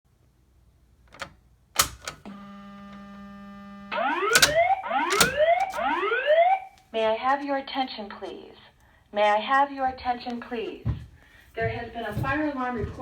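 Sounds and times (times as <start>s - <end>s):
sharp clicks: 1.1s - 2.3s, 4.1s - 6.0s
buzzing alarm tone: 2.0s - 6.6s
fire alarm whoop tone: 3.9s - 6.7s.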